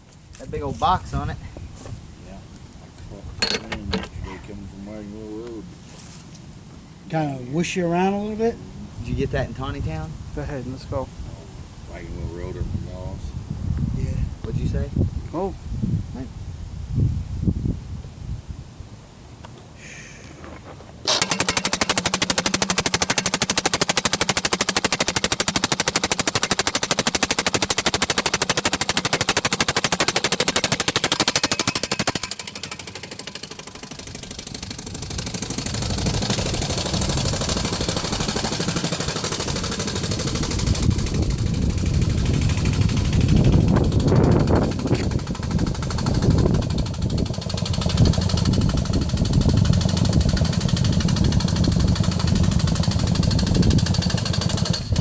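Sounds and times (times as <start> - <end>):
boring tool hammering: 3.4 - 4.2, 21.1 - 55.0.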